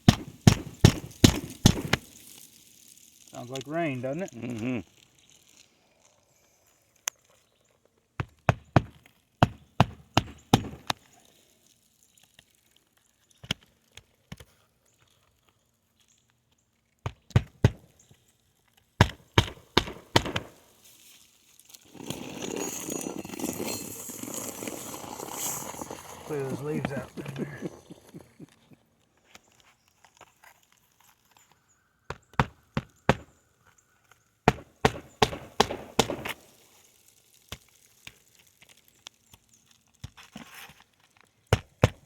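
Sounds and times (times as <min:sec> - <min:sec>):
hammer striking nails: 0:00.0 - 0:02.1, 0:08.2 - 0:11.0, 0:17.1 - 0:17.9, 0:19.0 - 0:20.6, 0:32.1 - 0:33.4, 0:34.4 - 0:36.4, 0:41.5 - 0:42.0
rustling scraping noise: 0:20.4 - 0:31.7, 0:40.1 - 0:41.4.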